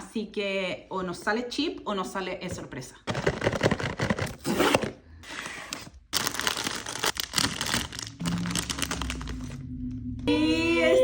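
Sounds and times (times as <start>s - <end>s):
toy packaging tearing and crinkling: 3.1s - 9.6s.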